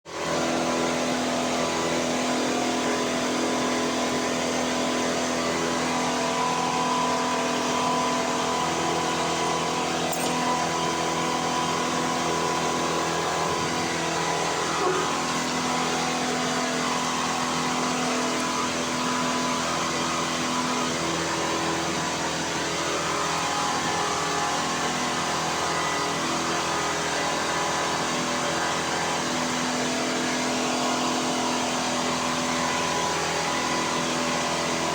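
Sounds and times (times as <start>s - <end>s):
stepper motors humming: 5.7s - 27.0s.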